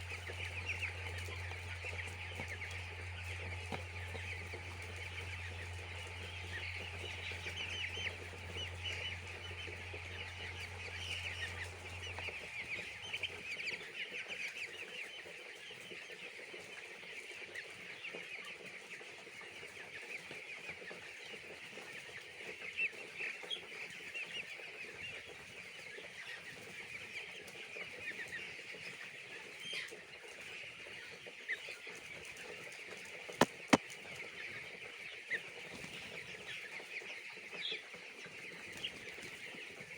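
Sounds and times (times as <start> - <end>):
low steady hum: 0.0 - 13.5
chicks peeping: 0.0 - 39.9.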